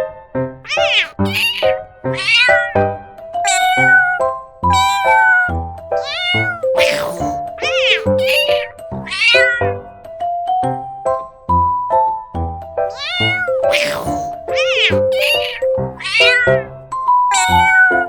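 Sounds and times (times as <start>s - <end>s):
cat meowing: 0.7s - 2.9s, 3.5s - 9.8s, 12.9s - 16.7s, 17.3s - 18.0s.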